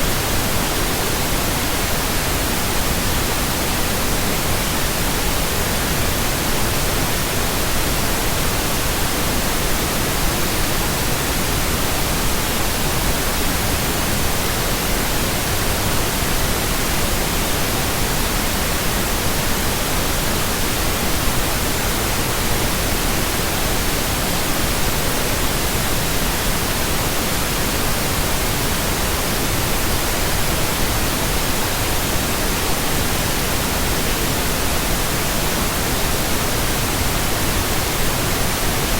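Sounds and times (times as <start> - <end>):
pink noise hiss: 0.0 - 38.9.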